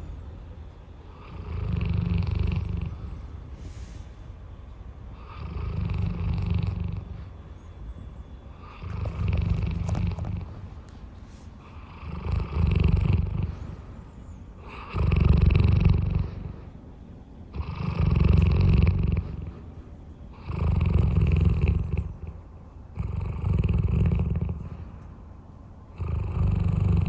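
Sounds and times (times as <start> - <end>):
dog snoring: 1.1 - 3.4, 5.2 - 7.4, 8.5 - 10.7, 11.6 - 14.0, 14.6 - 16.8, 17.5 - 19.7, 20.3 - 24.9, 25.9 - 27.0
dog breathing quietly: 1.1 - 4.4, 5.1 - 22.4.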